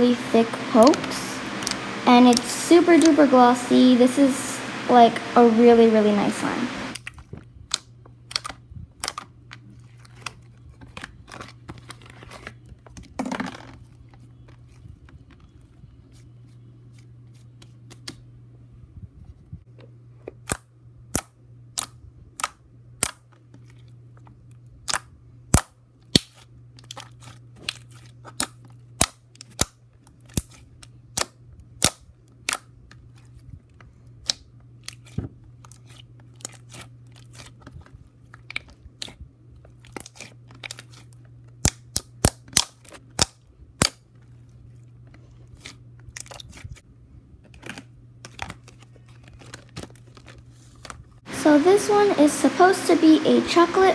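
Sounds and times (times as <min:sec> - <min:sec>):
steady low hum: 0:00.0 - 0:07.0, 0:51.3 - 0:53.9.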